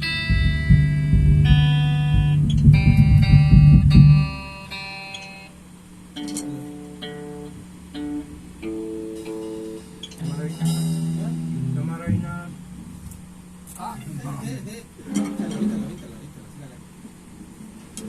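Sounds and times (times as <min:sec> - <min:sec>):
loud low pulsing: 0:00.0 - 0:04.5, 0:10.4 - 0:13.2
instrumental guitar music: 0:00.0 - 0:13.7.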